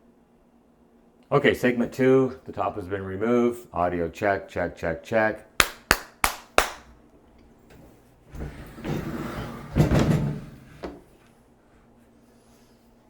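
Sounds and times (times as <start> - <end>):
hand claps: 5.6 - 6.9.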